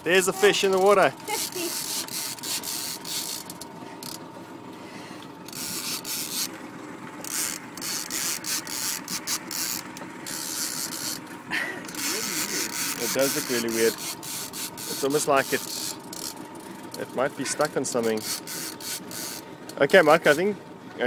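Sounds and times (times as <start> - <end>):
fishing reel clicking and ratcheting: 0.5 - 4.2, 5.5 - 6.5, 7.2 - 11.2, 11.8 - 17.1, 17.9 - 20.4.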